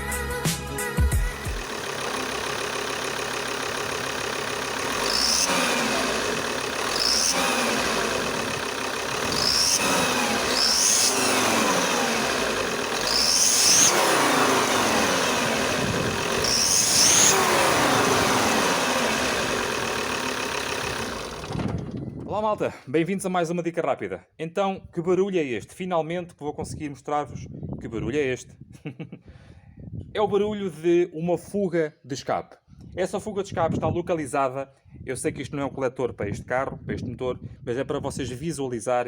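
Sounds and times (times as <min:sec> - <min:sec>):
car engine idling and revving: 0:01.2 - 0:22.1
exhaust leak rasp: 0:01.4 - 0:21.8.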